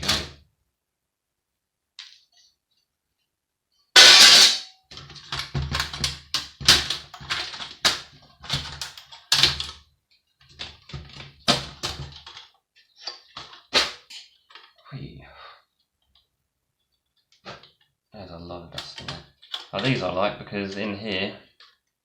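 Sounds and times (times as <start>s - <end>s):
metal parts clicking and clattering: 4.0s - 9.8s, 18.8s - 20.0s.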